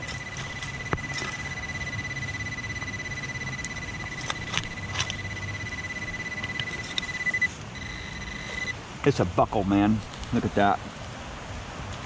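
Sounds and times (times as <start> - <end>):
digging clicks and scrapes: 0.0 - 8.8
metal detector high tone: 0.0 - 8.8.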